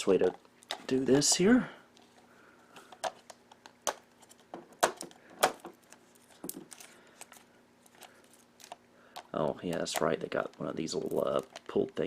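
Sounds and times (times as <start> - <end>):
cellophane crinkling: 5.8 - 12.0.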